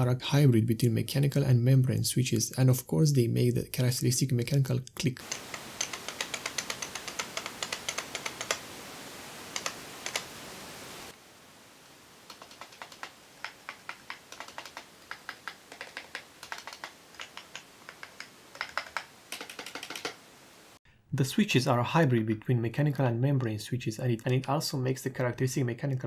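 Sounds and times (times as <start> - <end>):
keyboard typing clicks: 5.2 - 8.6, 9.5 - 10.3, 12.3 - 20.2.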